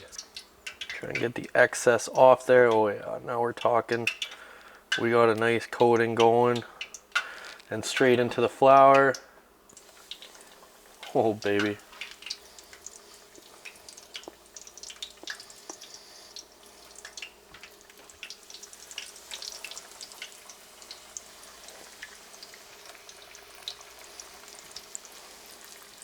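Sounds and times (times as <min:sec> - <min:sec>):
fish deep-frying in oil: 0:00.0 - 0:02.8, 0:03.8 - 0:05.0, 0:05.6 - 0:26.0.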